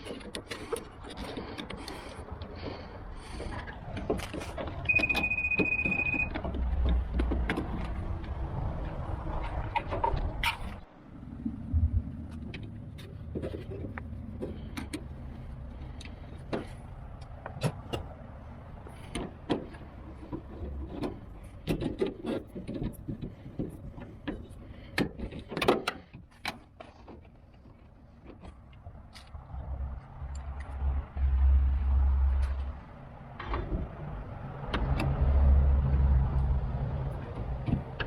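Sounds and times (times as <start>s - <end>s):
low rumble: 10.3s - 14.4s.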